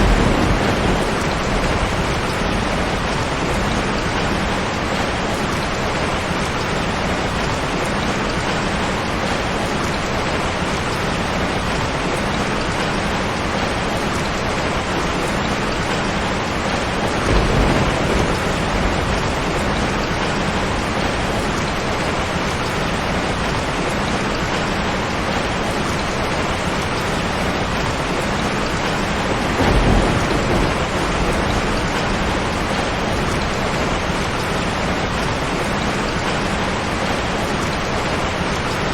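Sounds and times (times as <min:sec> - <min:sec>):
low rumbles of thunder: 0:00.0 - 0:07.5, 0:14.8 - 0:24.5, 0:27.0 - 0:36.3
heavy rain on a tin roof: 0:00.0 - 0:38.9.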